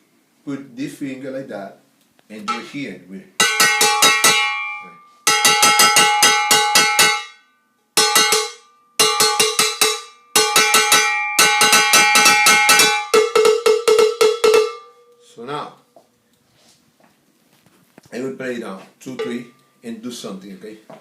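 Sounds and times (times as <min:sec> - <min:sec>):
cowbell struck with a stick: 0:02.5 - 0:02.8, 0:03.4 - 0:07.4, 0:08.0 - 0:15.2, 0:19.2 - 0:19.6.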